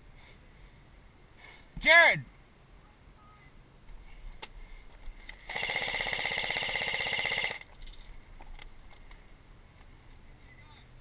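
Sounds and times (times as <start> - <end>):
airsoft gun full-auto burst: 5.5 - 7.7.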